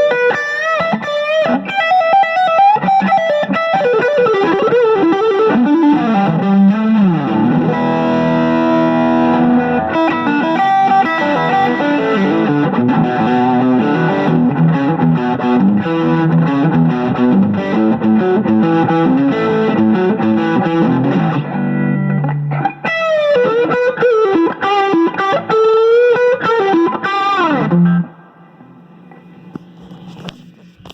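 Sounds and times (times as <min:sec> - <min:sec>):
distorted electric guitar: 0:00.0 - 0:30.9
low amp hum: 0:06.0 - 0:22.5, 0:27.7 - 0:30.9.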